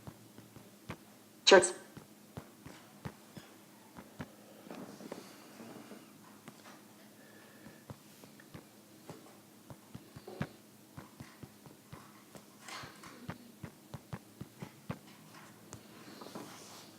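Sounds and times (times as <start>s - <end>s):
taps on tablet screen: 0.0s - 1.1s, 1.9s - 5.2s, 7.6s - 15.8s
soft brushing: 16.0s - 16.9s.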